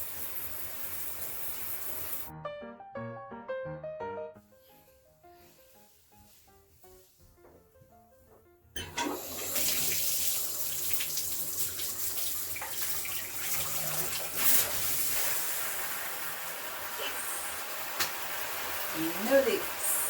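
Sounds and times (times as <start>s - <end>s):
shower water spraying: 0.0s - 2.3s, 9.0s - 20.0s.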